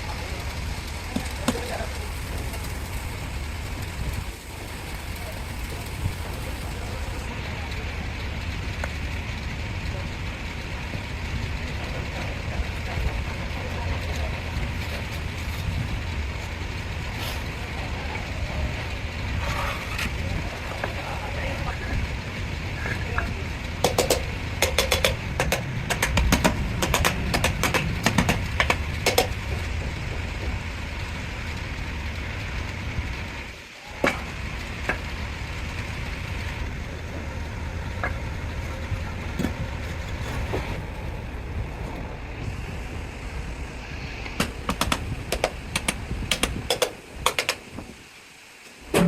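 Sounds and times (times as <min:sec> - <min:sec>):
low machine rumble: 0:00.0 - 0:49.0
sharp knocks and clicks: 0:23.8 - 0:30.0, 0:44.3 - 0:47.7.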